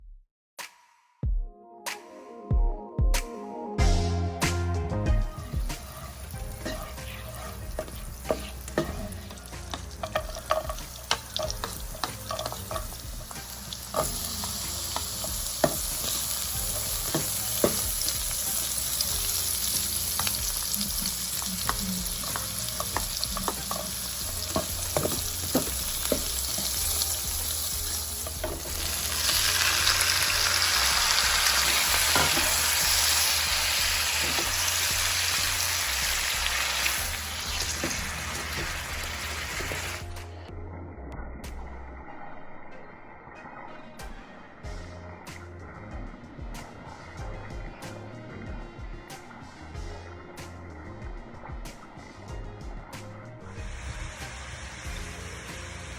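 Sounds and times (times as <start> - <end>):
food sizzling in a pan: 5.2 - 40.2, 53.5 - 55.9
utensil clicking against pan: 7.8 - 16.2, 20.1 - 27.1.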